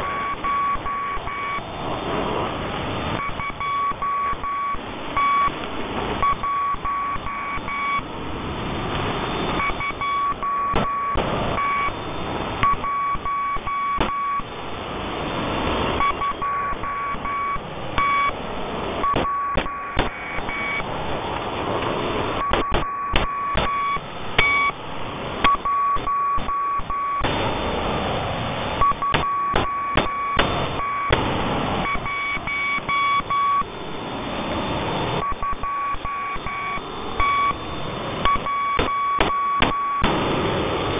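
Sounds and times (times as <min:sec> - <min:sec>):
morse code beeps: 0:00.0 - 0:01.7, 0:03.2 - 0:05.6, 0:06.2 - 0:08.1, 0:09.4 - 0:14.5, 0:16.0 - 0:18.4, 0:19.0 - 0:20.9, 0:22.3 - 0:24.8, 0:25.4 - 0:27.3, 0:28.8 - 0:31.2, 0:31.8 - 0:33.7, 0:35.2 - 0:40.1
radio static hiss: 0:00.0 - 0:40.9
crackles and clicks: 0:02.6 - 0:08.1, 0:08.9 - 0:14.5, 0:19.0 - 0:24.8, 0:25.4 - 0:27.6, 0:28.8 - 0:33.7, 0:35.1 - 0:40.9.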